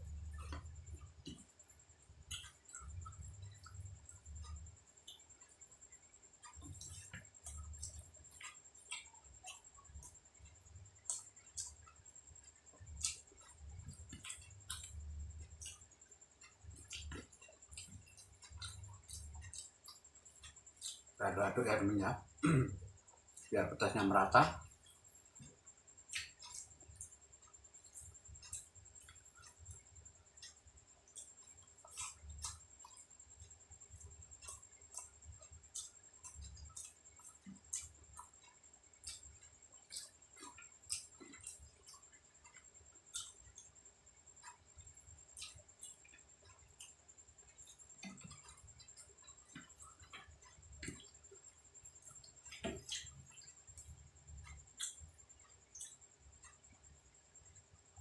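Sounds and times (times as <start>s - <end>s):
person chewing food: 0.0s - 58.0s
wet mouth clicks: 16.4s - 21.1s, 26.1s - 27.2s, 27.8s - 43.7s, 44.4s - 56.8s.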